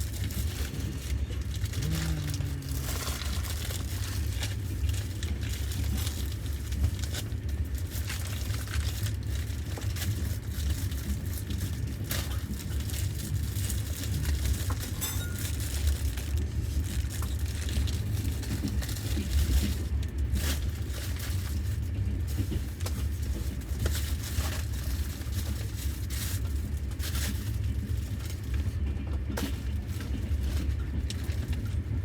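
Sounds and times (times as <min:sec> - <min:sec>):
plastic packaging crinkling: 0:00.0 - 0:28.1
train rumbling: 0:00.0 - 0:32.0.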